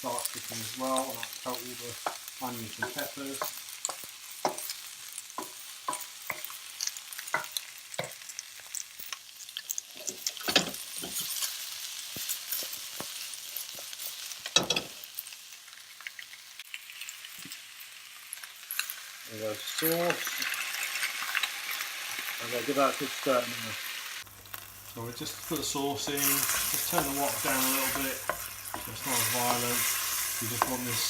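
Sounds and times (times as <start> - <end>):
vegetables sizzling in oil: 0.0 - 31.0
spoon scraping metal wok: 25.4 - 31.0.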